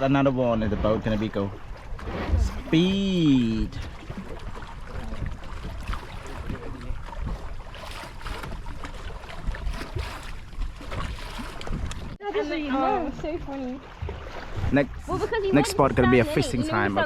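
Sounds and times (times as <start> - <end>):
water rushing past boat: 0.0 - 17.0
wind rumbling on microphone: 0.5 - 12.2.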